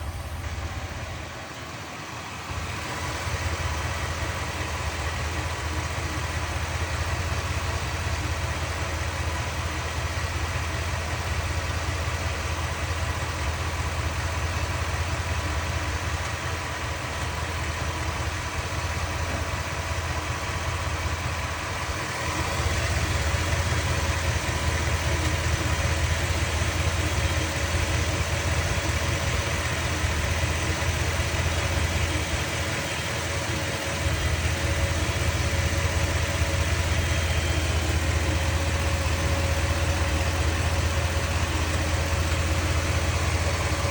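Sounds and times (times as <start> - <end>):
truck engine idling with tick: 0.0 - 43.9.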